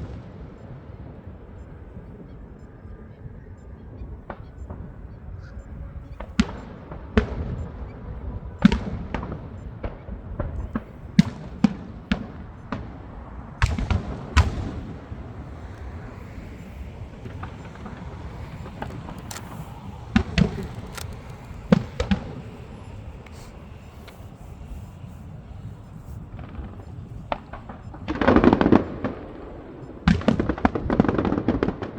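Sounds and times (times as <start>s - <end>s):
continuous low rumble: 0.0s - 31.9s
fireworks bangs and cracks: 8.6s - 31.9s.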